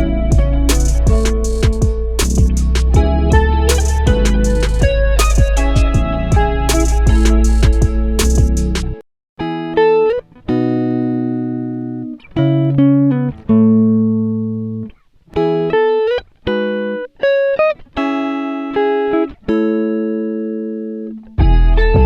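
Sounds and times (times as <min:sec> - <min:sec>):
solo guitar playing: 0:00.0 - 0:08.8, 0:09.4 - 0:22.0.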